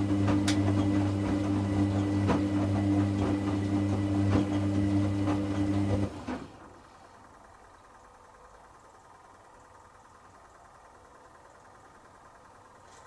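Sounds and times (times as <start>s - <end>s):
washing machine drum knocking: 0.0s - 6.0s
washing machine motor hum: 0.0s - 13.0s.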